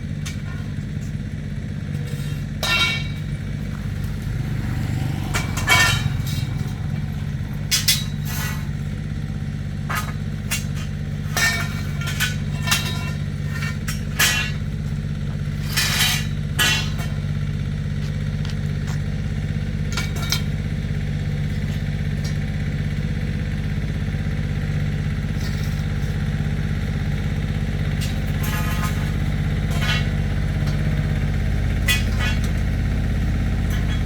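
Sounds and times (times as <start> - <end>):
low motor hum: 0.0 - 34.0
steel parts clanking: 1.9 - 8.9, 9.8 - 17.4, 27.9 - 34.0.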